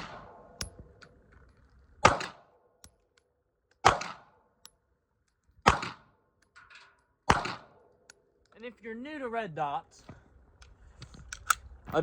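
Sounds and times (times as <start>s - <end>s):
pistol shots: 0.0s - 0.8s, 2.0s - 2.6s, 3.8s - 4.4s, 5.6s - 6.2s, 7.3s - 7.8s
bullet ticking on steel target: 2.8s - 3.8s.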